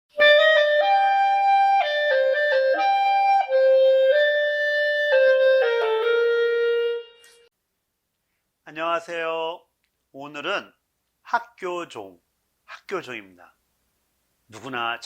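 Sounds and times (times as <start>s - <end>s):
solo clarinet melody: 0.1s - 7.5s.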